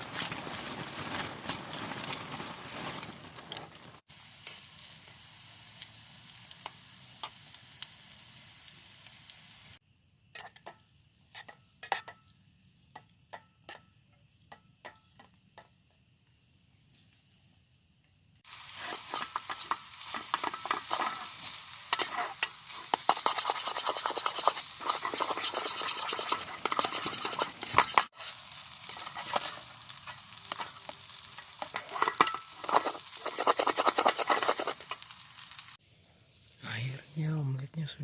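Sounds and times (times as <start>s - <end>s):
food sizzling in oil: 0.0s - 16.4s, 18.4s - 36.6s
utensil scraping pan: 18.5s - 35.2s.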